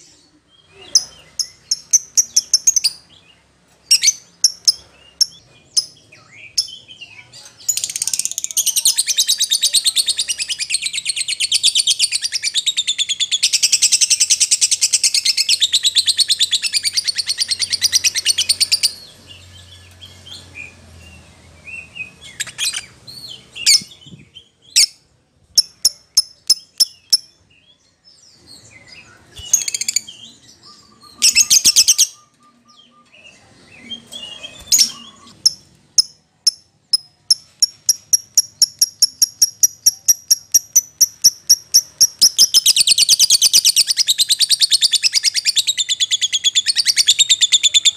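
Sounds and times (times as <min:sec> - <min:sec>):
bird chattering trill: 0:25.6 - 0:27.3, 0:34.3 - 0:47.9
bird sharp chirps: 0:25.6 - 0:27.6, 0:28.4 - 0:47.9.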